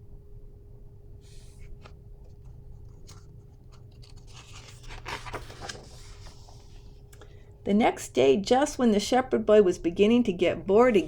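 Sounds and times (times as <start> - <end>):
faint steady hum: 0.0 - 11.0
paper page rustling: 1.3 - 6.9.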